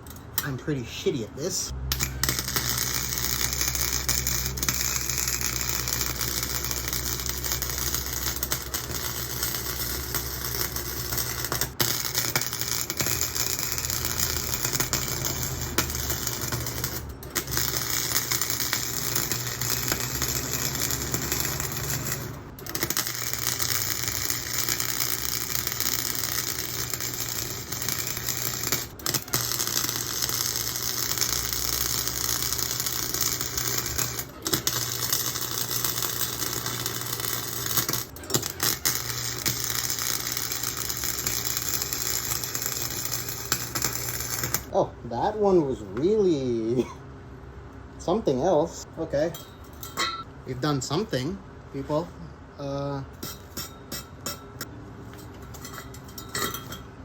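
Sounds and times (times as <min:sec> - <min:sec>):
welder arc crackling: 0:01.5 - 0:44.8.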